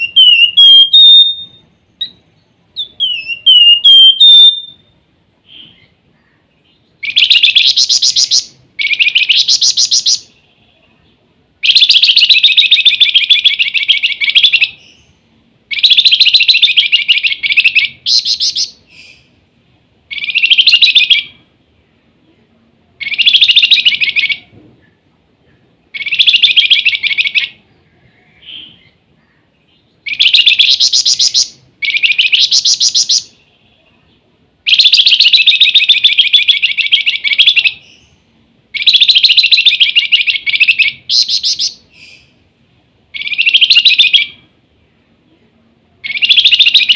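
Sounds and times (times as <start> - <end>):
songbird shrill chattering: 6.7 - 10.4, 11.6 - 19.3, 30.1 - 33.5, 38.8 - 42.4.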